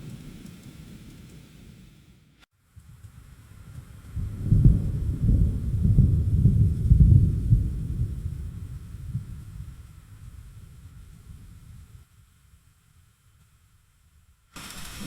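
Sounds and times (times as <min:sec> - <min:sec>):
deep rolling thunder: 0:04.2 - 0:10.5.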